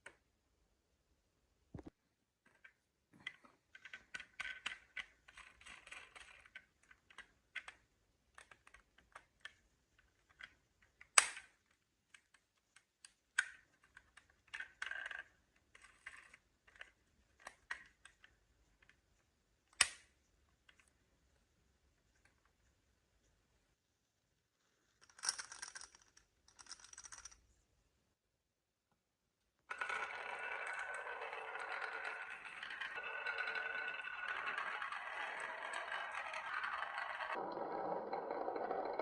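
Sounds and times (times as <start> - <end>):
marbles clacking on wooden run: 29.7 - 39.0.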